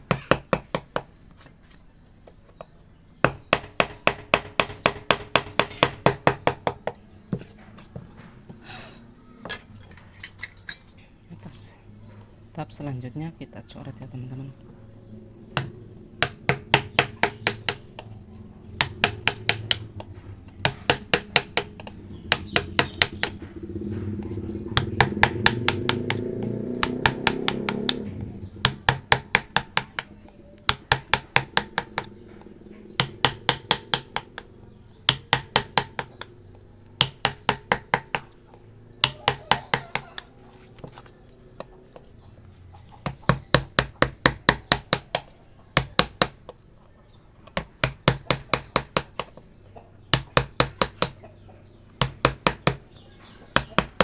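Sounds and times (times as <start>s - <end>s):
mallet tapping chisel into wood: 0.1s - 1.1s, 3.2s - 7.0s, 15.6s - 18.0s, 18.8s - 23.4s, 24.8s - 32.2s, 33.0s - 34.5s, 35.1s - 36.3s, 37.0s - 38.3s, 39.0s - 40.2s, 43.0s - 46.4s, 47.5s - 49.4s, 50.1s - 51.2s, 52.0s - 52.9s, 53.5s - 54.0s.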